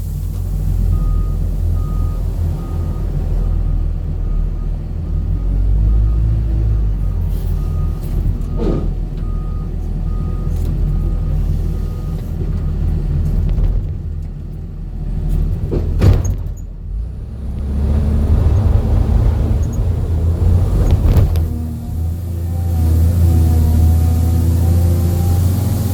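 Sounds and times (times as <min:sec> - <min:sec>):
vehicle engine rumbling: 0:00.0 - 0:25.9
knocks and rattles: 0:13.3 - 0:16.9.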